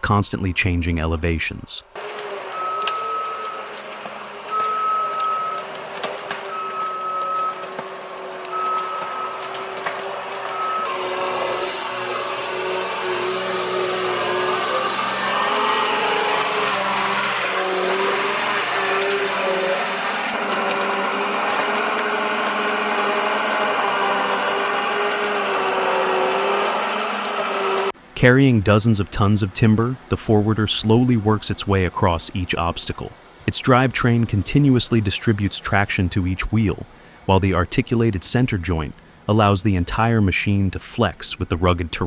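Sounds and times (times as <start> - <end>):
forestry machine engine running: 1.9 - 39.5
backup alarm beeping: 2.5 - 3.7, 4.5 - 5.7, 6.4 - 7.7, 8.5 - 9.7, 10.4 - 11.0.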